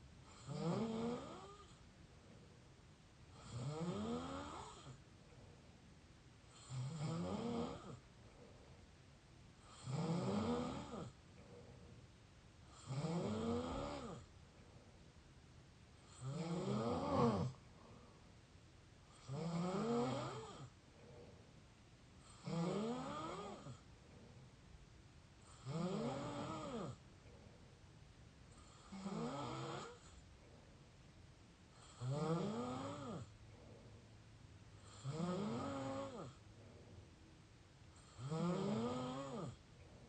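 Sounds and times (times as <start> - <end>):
person snoring: 0.3 - 1.8, 3.4 - 5.0, 6.5 - 8.0, 9.6 - 11.2, 12.7 - 14.3, 16.1 - 18.0, 19.1 - 20.7, 22.3 - 23.8, 25.5 - 27.0, 28.6 - 30.2, 31.8 - 33.3, 34.8 - 36.4, 38.0 - 39.6.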